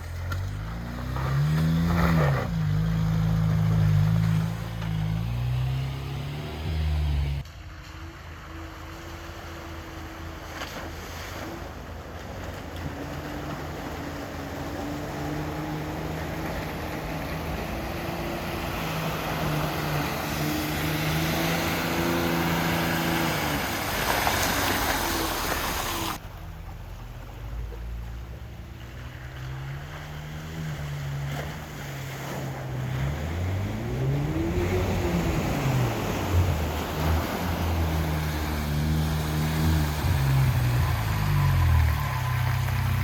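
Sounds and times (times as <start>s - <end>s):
off-road engine revving: 0.0s - 43.0s
water or mud splashing: 8.8s - 43.0s.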